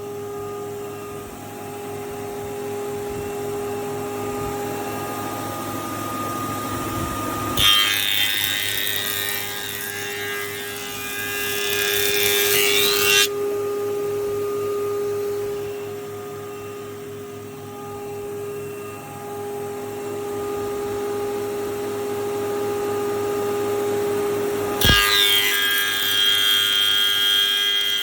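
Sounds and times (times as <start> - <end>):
planer running hum: 6.6 - 13.3, 24.8 - 28.0
planer cutting board: 7.6 - 13.3, 24.8 - 28.0.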